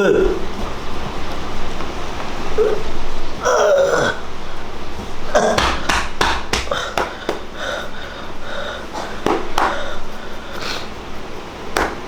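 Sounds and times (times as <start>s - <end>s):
person making sharp breaths: 5.3s - 11.1s.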